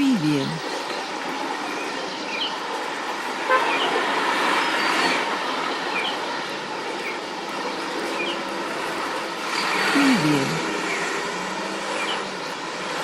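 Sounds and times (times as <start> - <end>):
city street traffic: 0.0 - 13.0
small birds chirping: 4.6 - 8.6, 11.9 - 12.8.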